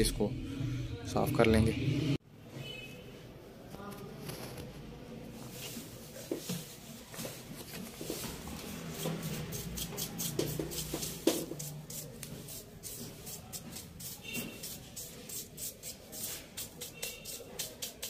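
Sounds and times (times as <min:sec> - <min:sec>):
brush scratching on metal: 0:08.6 - 0:18.0.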